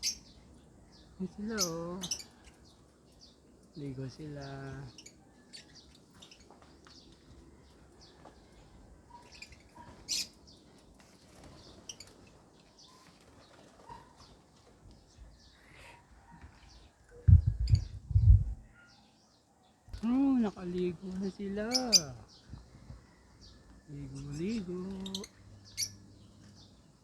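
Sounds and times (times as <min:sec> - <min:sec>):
lovebirds chirping faintly: 0:00.0 - 0:27.0
loud low thuds: 0:17.3 - 0:18.6.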